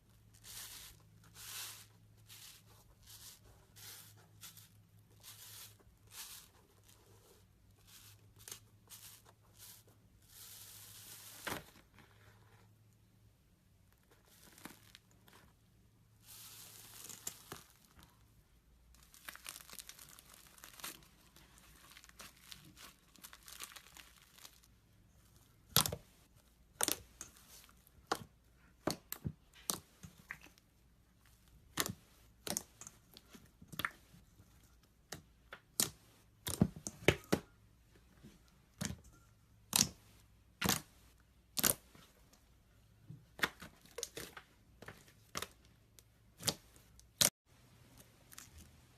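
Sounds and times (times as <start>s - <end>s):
slime crinkling: 18.9s - 26.0s.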